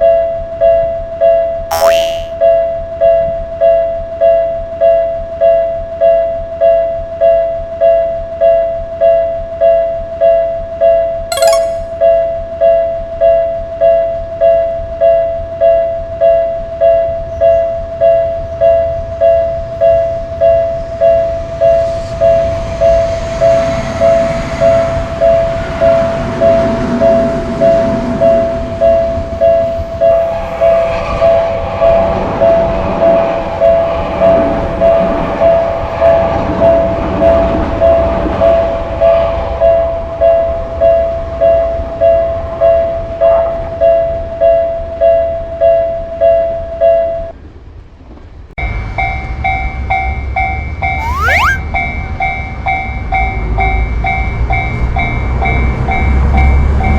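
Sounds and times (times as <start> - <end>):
level crossing two-tone ding: 1.7 - 2.3, 11.3 - 12.0, 51.0 - 51.6.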